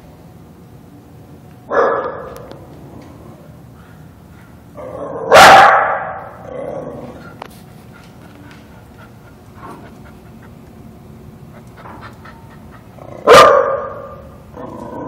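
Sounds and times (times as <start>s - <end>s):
dog barking: 1.7s - 2.4s, 5.3s - 6.2s, 13.2s - 14.2s.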